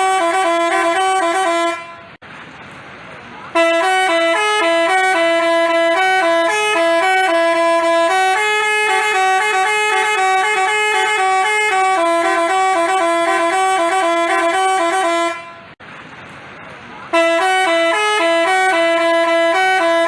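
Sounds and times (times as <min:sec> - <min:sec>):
multi-tone bus horn playing tune: 0:00.0 - 0:02.2, 0:03.5 - 0:15.8, 0:17.1 - 0:20.0.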